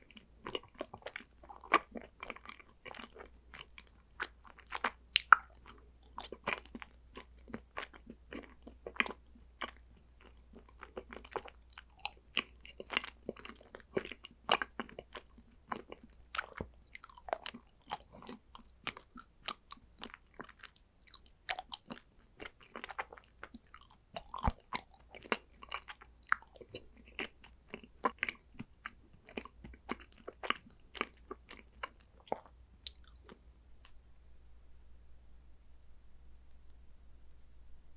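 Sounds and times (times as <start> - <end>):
chewing chocolate crunches: 0.0 - 33.4
sticky mouth clicks: 4.8 - 6.5.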